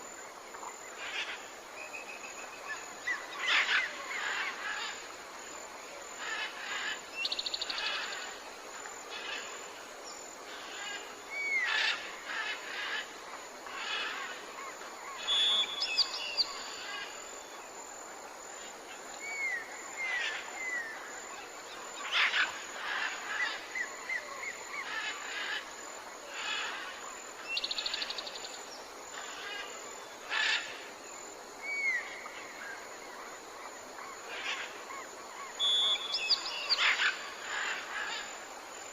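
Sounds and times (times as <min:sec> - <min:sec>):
soft background hiss: 0:00.0 - 0:38.9
birds chirping and trilling: 0:35.4 - 0:38.4.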